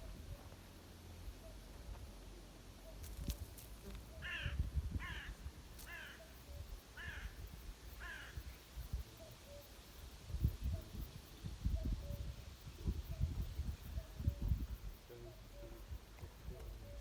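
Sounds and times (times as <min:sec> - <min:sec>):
bird cawing harshly: 0:04.2 - 0:05.3, 0:05.9 - 0:06.2.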